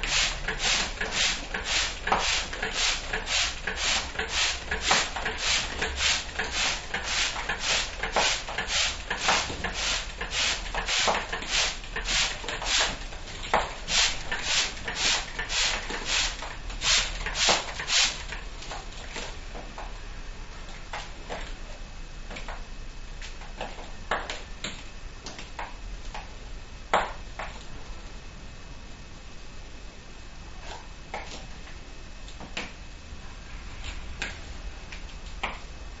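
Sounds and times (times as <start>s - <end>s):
spray bottle spraying: 0.0s - 18.2s.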